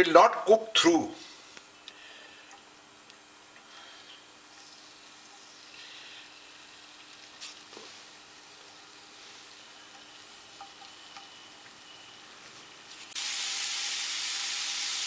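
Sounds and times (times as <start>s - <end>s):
potato sizzling in frying pan: 13.0s - 15.0s.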